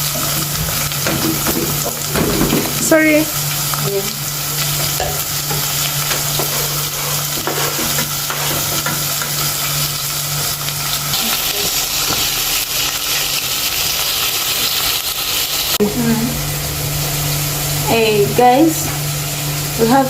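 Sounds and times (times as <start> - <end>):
vegetables sizzling in oil: 0.0 - 20.0
steady low hum: 15.8 - 20.0.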